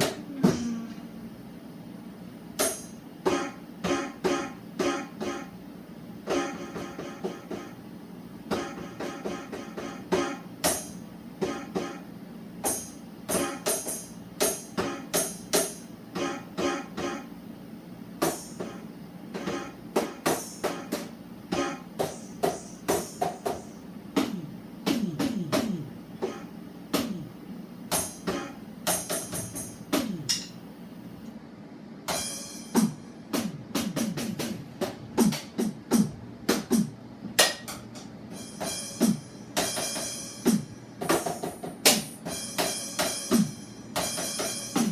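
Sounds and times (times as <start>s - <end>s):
steady low hum: 0.0s - 44.9s
electronic drum hits: 2.6s - 5.6s, 12.6s - 17.2s, 32.1s - 36.9s, 38.3s - 44.9s.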